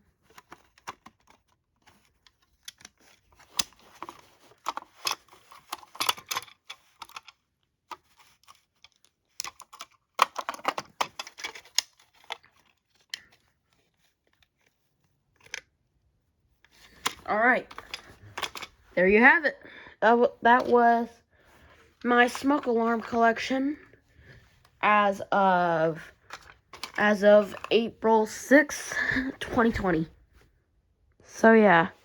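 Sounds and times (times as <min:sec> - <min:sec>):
plastic smoke alarm being handled: 0:00.0 - 0:15.7, 0:16.6 - 0:19.3, 0:25.9 - 0:28.0.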